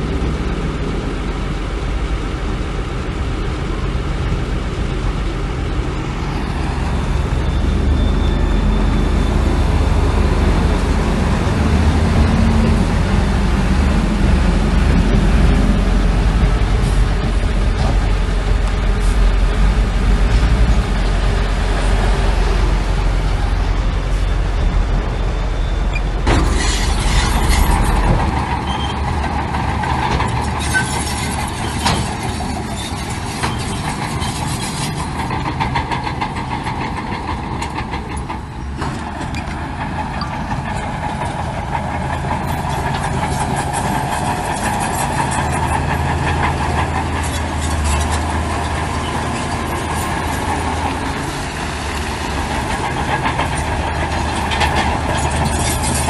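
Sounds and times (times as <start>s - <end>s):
bulldozer diesel engine: 0.0s - 56.0s
steel tracks clanking: 1.7s - 56.0s.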